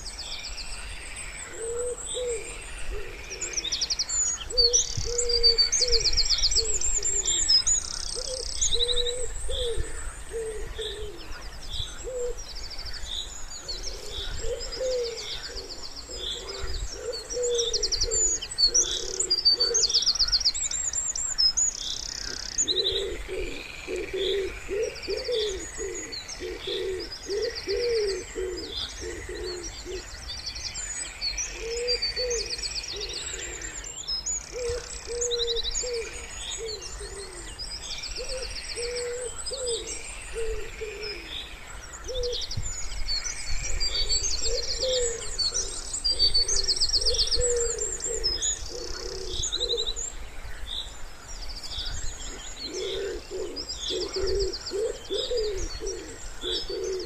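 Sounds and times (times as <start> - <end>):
songbirds trilling and chirping: 0.0 - 57.0
wood pigeon cooing: 1.5 - 3.7, 4.5 - 7.5, 8.2 - 11.3, 12.0 - 12.4, 13.8 - 19.9, 22.3 - 30.0, 31.6 - 33.8, 34.5 - 37.5, 38.2 - 41.3, 43.9 - 50.0, 52.3 - 57.0.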